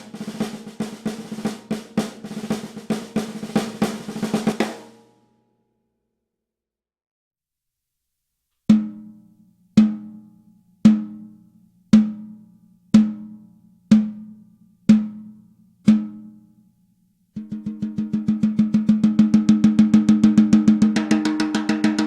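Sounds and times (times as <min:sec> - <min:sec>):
snare drum hits: 0:00.0 - 0:05.0, 0:17.4 - 0:22.0.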